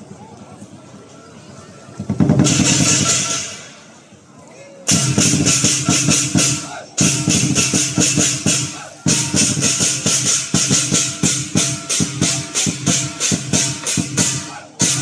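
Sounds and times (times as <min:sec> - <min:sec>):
big drum beating: 0:02.1 - 0:03.8, 0:04.9 - 0:15.0
crashing cymbals: 0:02.4 - 0:03.9, 0:04.9 - 0:15.0
ringing gong: 0:09.1 - 0:15.0.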